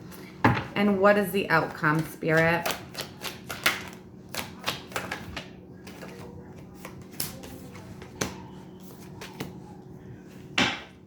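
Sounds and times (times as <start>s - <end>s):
cards clicking and snapping: 2.0s - 6.2s.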